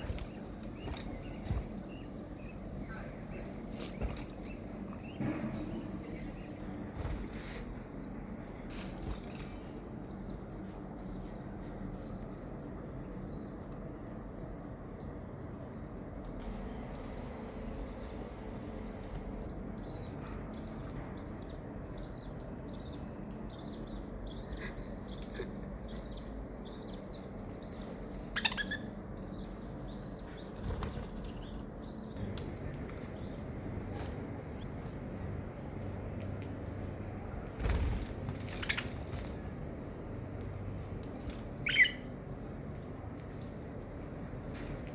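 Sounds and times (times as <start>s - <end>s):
steady low hum: 0.0s - 44.9s
small parrots chirping: 24.4s - 29.4s, 41.6s - 42.0s.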